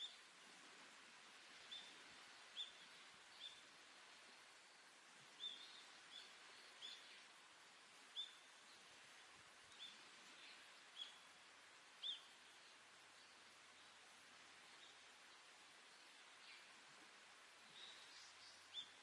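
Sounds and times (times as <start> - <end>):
outdoor hiss: 0.0 - 19.0
bird chirping: 2.6 - 3.6, 5.4 - 7.2, 9.7 - 11.2, 12.0 - 12.3, 17.6 - 19.0.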